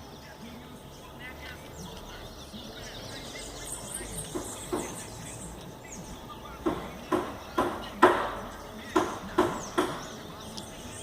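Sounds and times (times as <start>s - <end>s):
small birds chirping: 0.0s - 11.0s
sharp knocks: 4.3s - 5.0s, 6.6s - 10.2s.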